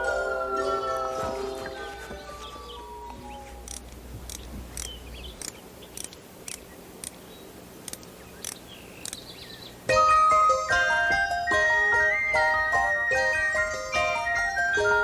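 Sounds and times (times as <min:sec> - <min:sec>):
music with bell-like mallet notes: 0:00.0 - 0:03.0, 0:09.9 - 0:15.0.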